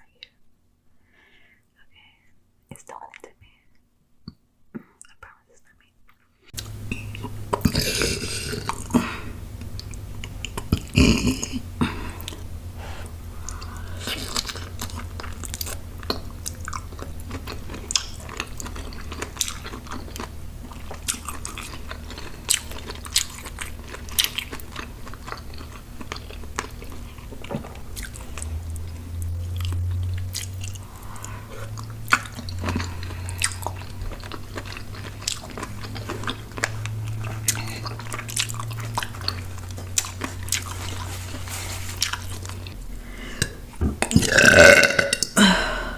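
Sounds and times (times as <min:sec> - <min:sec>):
chewing crunchy food: 0:06.1 - 0:12.5, 0:13.4 - 0:42.8.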